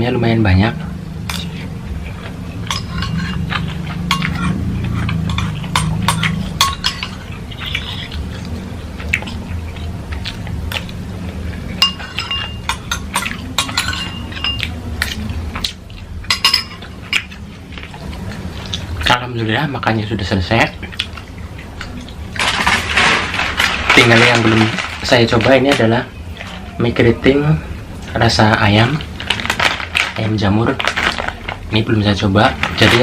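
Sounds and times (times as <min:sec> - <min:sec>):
low steady hum: 0:00.0 - 0:33.0
cutlery clinking against a plate: 0:02.2 - 0:10.9, 0:11.7 - 0:18.8.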